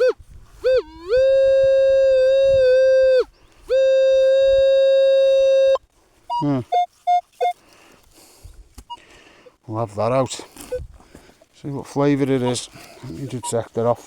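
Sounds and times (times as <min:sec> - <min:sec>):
metal detector steady tone: 0:00.0 - 0:07.6.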